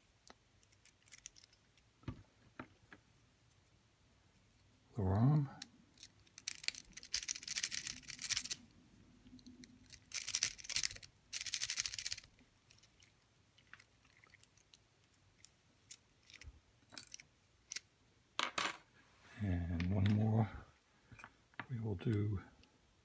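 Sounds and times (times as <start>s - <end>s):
small metallic clicks: 0.2s - 1.9s, 9.3s - 17.9s.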